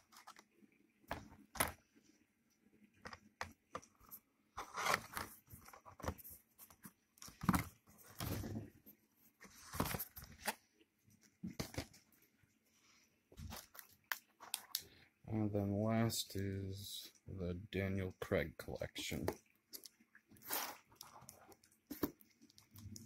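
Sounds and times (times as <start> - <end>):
plastic cases and cardboard handled: 0.0 - 2.0, 2.9 - 12.4, 13.3 - 14.8, 19.1 - 23.0.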